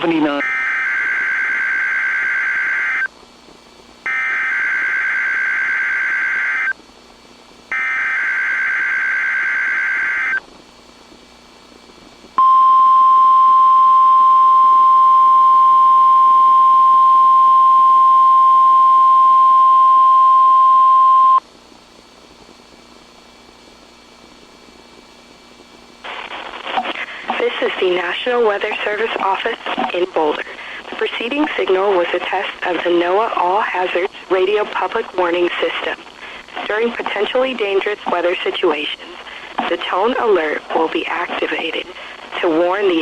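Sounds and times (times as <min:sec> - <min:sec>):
low receiver hiss: 0:02.2 - 0:08.9, 0:09.7 - 0:12.4, 0:21.4 - 0:43.0
steady warning alarm tone: 0:04.1 - 0:06.7, 0:07.7 - 0:10.4.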